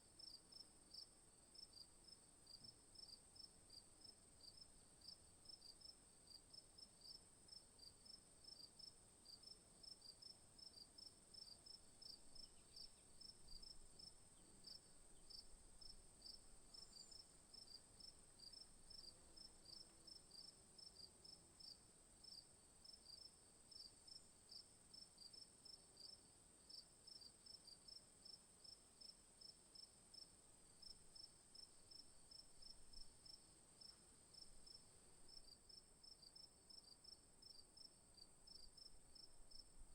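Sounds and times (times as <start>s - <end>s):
insects chirping: 11.4s - 20.5s.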